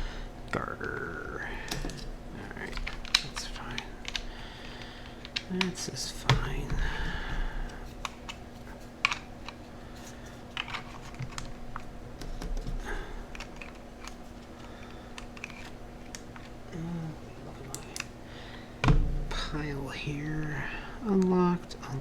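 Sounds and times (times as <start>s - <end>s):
steady low hum: 0.0s - 22.0s
small plastic parts clicking: 0.5s - 6.5s, 9.0s - 16.6s.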